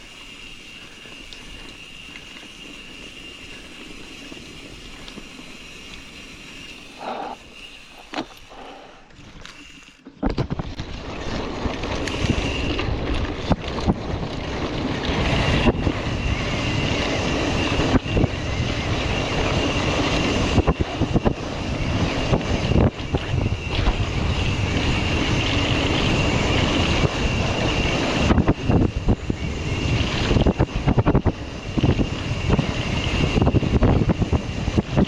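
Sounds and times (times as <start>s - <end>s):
steady high whine: 0.0s - 10.1s, 14.4s - 35.0s
bike knocks and rattles: 9.2s - 15.0s
wind rushing over microphone: 10.2s - 35.0s.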